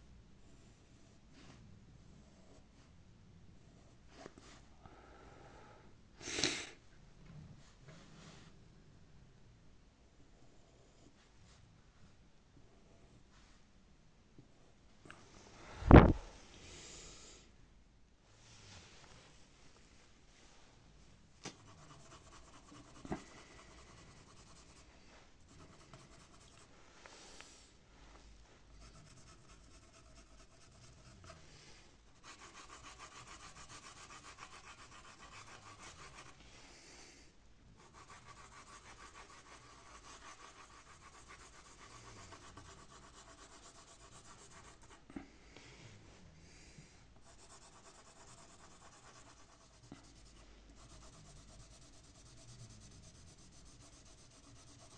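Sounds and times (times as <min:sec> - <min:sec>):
pencil tapping paper: 0:21.4 - 0:24.8
pencil rubbing on paper: 0:21.4 - 0:26.7, 0:28.6 - 0:36.5, 0:37.8 - 0:45.1, 0:47.2 - 0:54.9.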